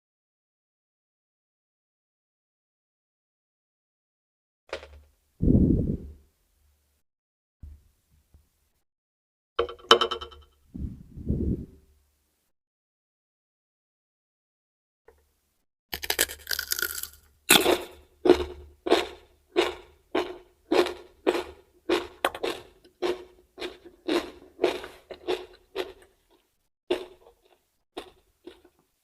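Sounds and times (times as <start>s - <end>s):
crunchy chewing of raw vegetables: 16.0s - 28.8s.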